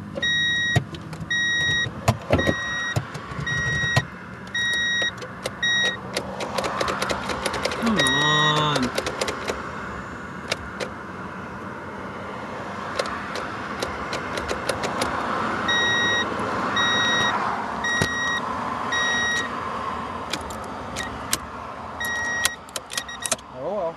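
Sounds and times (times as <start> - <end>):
car engine running: 0.0 - 23.3
warning chime beeping: 0.2 - 6.0, 7.8 - 8.8, 15.7 - 19.5, 22.0 - 23.3
clicks: 13.0 - 15.3.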